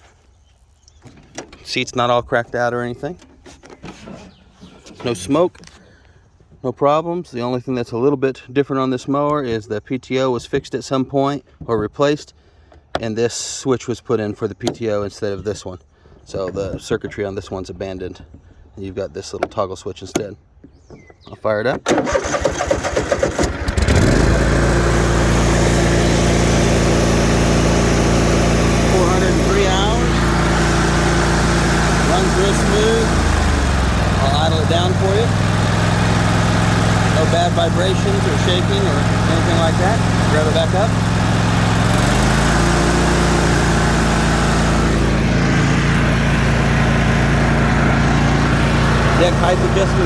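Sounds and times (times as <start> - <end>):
mower engine starting and running: 1.0 - 5.8, 21.8 - 50.0.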